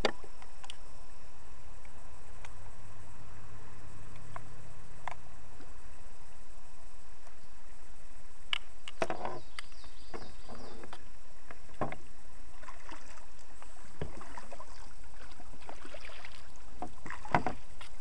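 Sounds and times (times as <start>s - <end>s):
paddle splashes: 11.6s - 18.0s.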